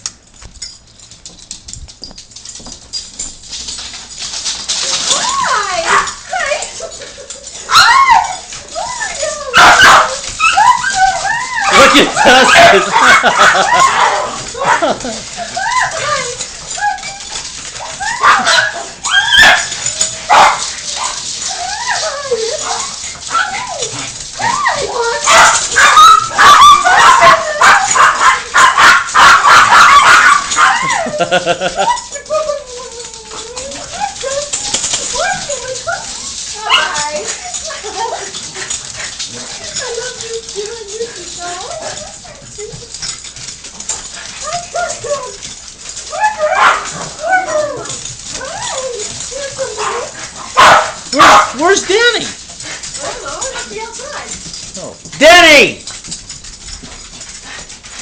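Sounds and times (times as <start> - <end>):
dogs whining: 0.6 - 58.0
dogs barking: 5.4 - 32.6, 43.3 - 54.4.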